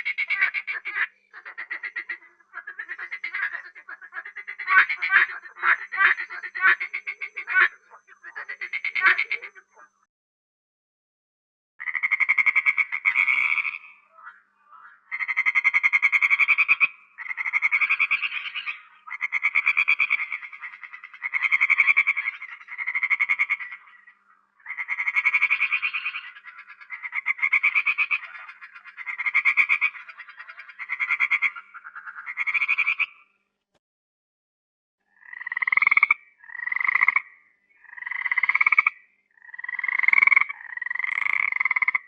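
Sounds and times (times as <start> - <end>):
frog trilling: 0.0 - 10.0, 11.8 - 33.3, 35.1 - 42.0.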